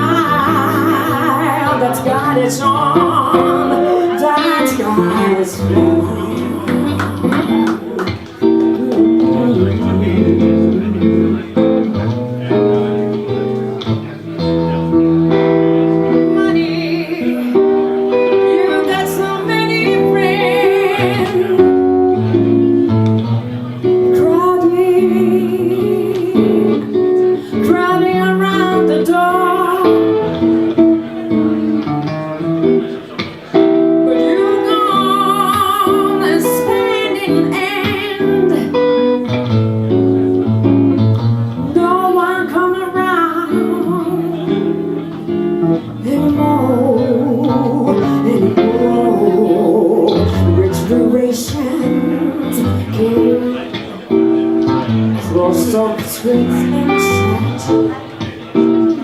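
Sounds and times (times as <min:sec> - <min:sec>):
person singing with vibrato: 0:00.0 - 0:11.6, 0:16.1 - 0:22.2, 0:24.2 - 0:30.3, 0:34.1 - 0:39.0, 0:45.9 - 0:53.8, 0:55.2 - 0:58.0
guitar playing: 0:00.0 - 0:59.0.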